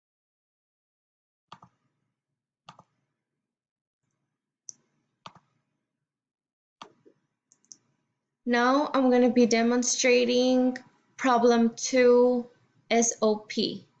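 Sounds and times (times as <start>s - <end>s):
small sharp clicks: 1.5s - 1.8s, 2.7s - 2.9s.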